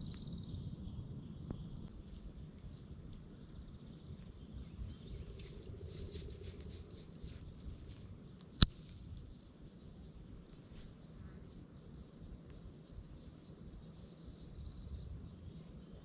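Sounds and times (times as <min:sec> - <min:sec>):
fire crackling and popping: 0:01.8 - 0:13.9
bird calling: 0:03.0 - 0:13.2
loud sharp snap of wood: 0:08.6 - 0:09.0.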